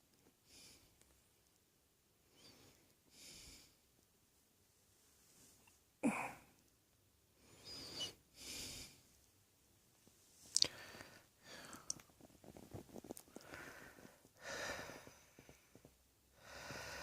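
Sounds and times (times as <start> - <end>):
soft breaths: 0.2 - 1.4, 2.2 - 4.0, 4.7 - 17.0
person coughing: 6.0 - 6.5.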